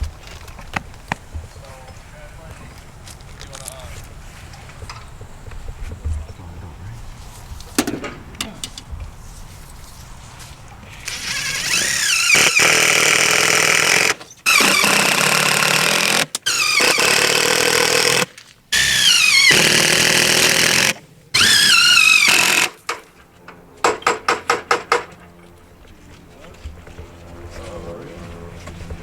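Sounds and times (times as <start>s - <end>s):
electric power drill whining: 11.0s - 22.9s.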